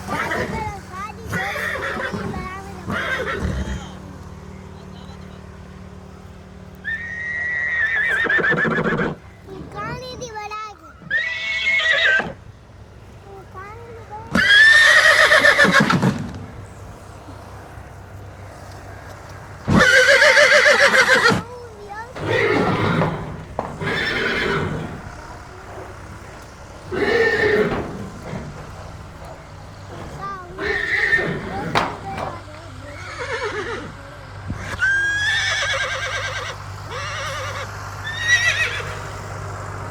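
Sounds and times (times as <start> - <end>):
horse whinnying: 0.0 - 0.7, 1.3 - 4.0, 6.9 - 9.2, 11.0 - 12.4, 14.4 - 16.4, 19.7 - 32.4, 33.0 - 33.9, 34.6 - 39.0.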